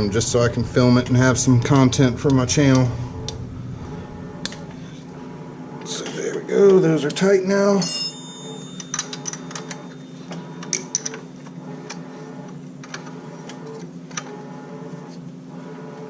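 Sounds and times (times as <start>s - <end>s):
steady low hum: 0.0s - 16.0s
hand tools clicking and tapping: 8.8s - 11.2s.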